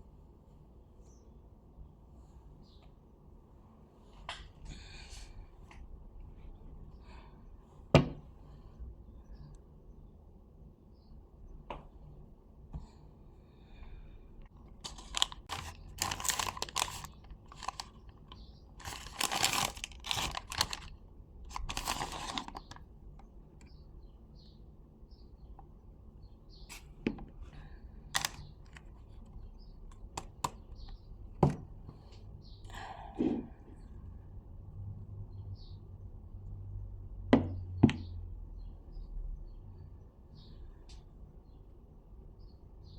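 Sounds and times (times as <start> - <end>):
packaging tearing and crumpling: 14.6 - 22.8, 28.1 - 28.9.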